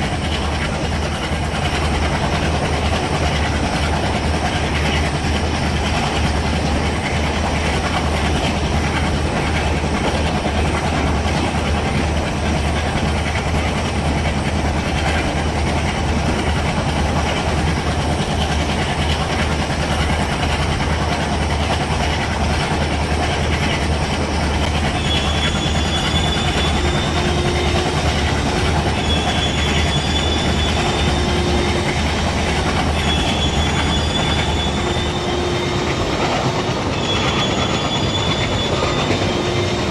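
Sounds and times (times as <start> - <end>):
locomotive engine drone: 0.0 - 39.9
train rolling noise: 0.0 - 39.9
short high squeals: 25.0 - 28.0, 28.9 - 32.0, 33.0 - 36.0, 36.9 - 39.9.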